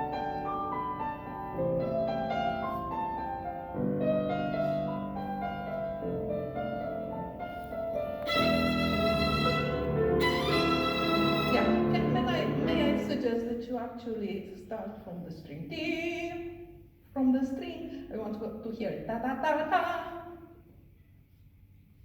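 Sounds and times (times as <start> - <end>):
piano sustained chords: 8.0 - 13.2
violin held note: 8.2 - 12.8.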